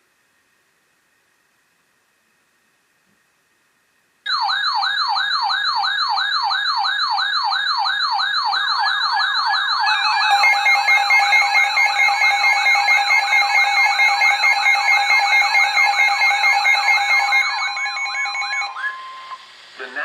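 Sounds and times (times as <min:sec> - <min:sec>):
rapid high beeps: 0:04.3 - 0:19.5
rising siren sweeps: 0:06.8 - 0:19.5
steady electronic tone: 0:09.6 - 0:19.6.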